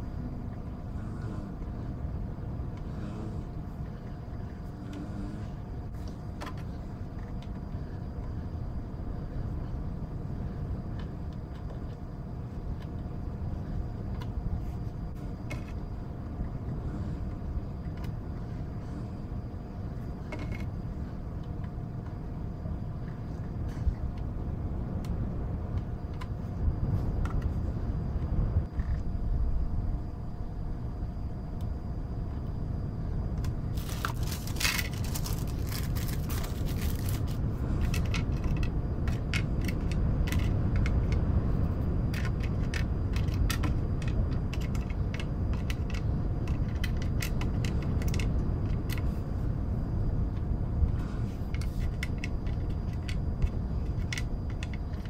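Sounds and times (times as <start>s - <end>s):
wind: 0.0s - 55.0s
puzzle pieces clicking and scraping: 33.7s - 41.2s.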